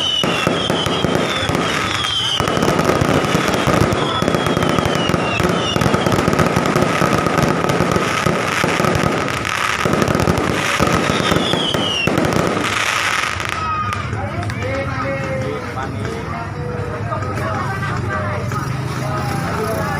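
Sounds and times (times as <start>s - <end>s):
falling firework whistles: 0.0s - 14.0s
fireworks crackling: 0.0s - 19.9s.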